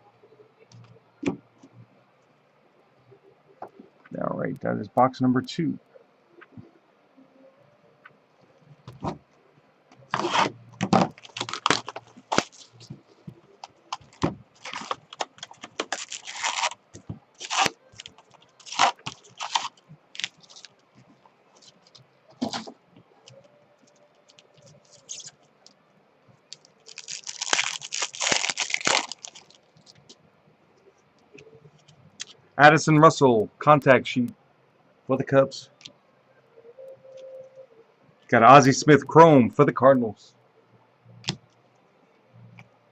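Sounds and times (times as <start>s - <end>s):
packaging tearing and crinkling: 10.1s - 13.0s, 13.7s - 20.7s, 24.3s - 25.3s, 26.5s - 30.0s.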